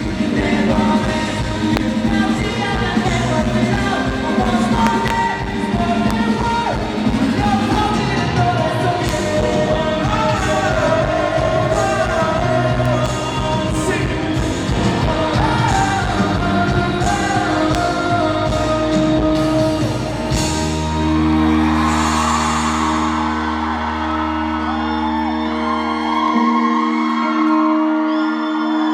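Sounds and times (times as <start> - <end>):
wordless singing: 0.0 - 20.6
live pop-rock band: 0.0 - 28.9.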